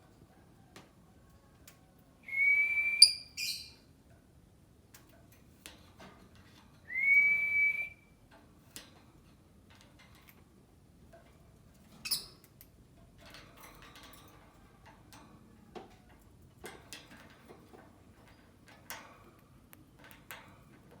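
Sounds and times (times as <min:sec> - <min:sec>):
bird chirps and squeaks: 0:03.0 - 0:03.8, 0:12.0 - 0:12.4.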